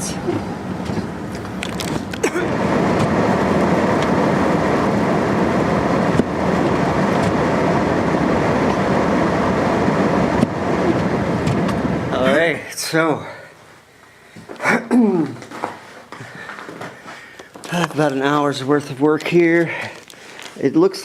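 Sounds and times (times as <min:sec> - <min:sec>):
car engine and tyre rumble: 0:00.0 - 0:12.2.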